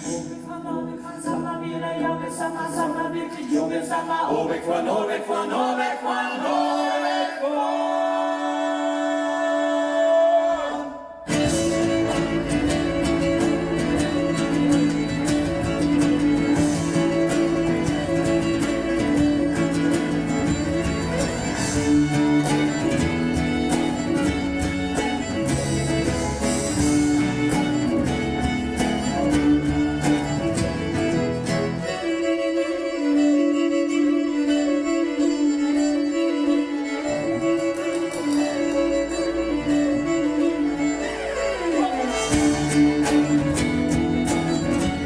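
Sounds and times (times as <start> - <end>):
violin: 0.0 - 45.0
guitar: 11.2 - 45.0
bass: 11.3 - 32.0, 38.6 - 45.0.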